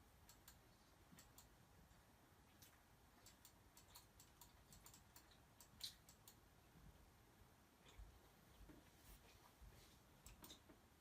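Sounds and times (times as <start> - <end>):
faint small clicks: 0.2 - 1.6, 2.5 - 6.4, 10.2 - 10.8.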